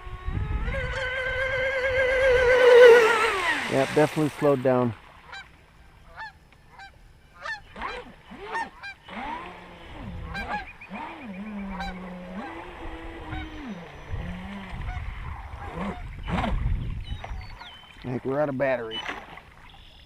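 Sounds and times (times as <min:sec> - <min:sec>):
low rising and falling tone: 0:00.0 - 0:04.4
geese honking: 0:05.2 - 0:05.5, 0:06.1 - 0:09.4, 0:10.2 - 0:14.0.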